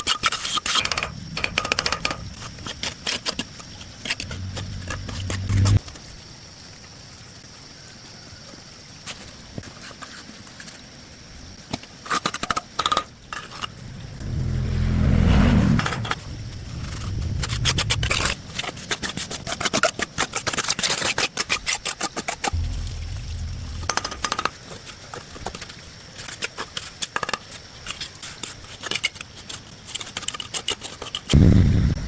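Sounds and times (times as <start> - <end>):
low rumble: 3.8 - 5.8, 13.5 - 18.5, 22.6 - 24.5, 31.4 - 32.0.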